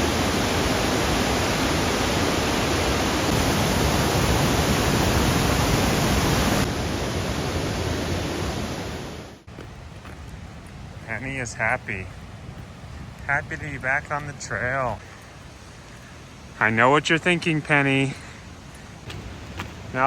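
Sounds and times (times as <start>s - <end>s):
waterfall roaring: 0.0s - 12.1s.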